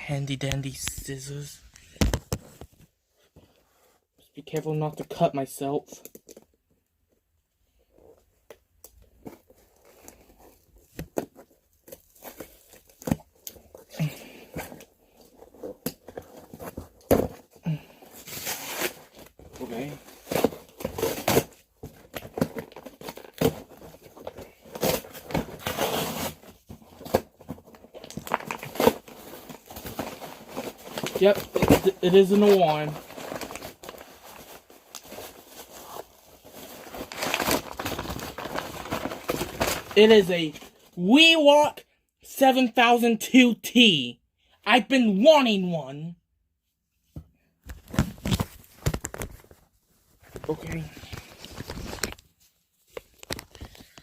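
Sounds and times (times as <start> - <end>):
packing material rustling: 8.9 - 41.0, 47.7 - 54.0
tearing tape and cardboard: 18.2 - 27.4.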